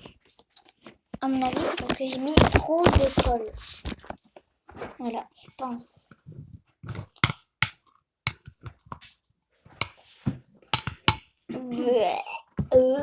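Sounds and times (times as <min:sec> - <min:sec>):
spoon knocking against bowl: 0:07.2 - 0:08.5, 0:10.8 - 0:11.3.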